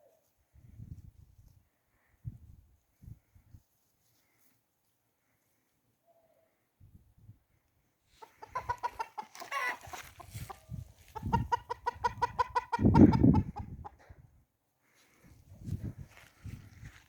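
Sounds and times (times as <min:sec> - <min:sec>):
chickens clucking: 0:08.1 - 0:14.2.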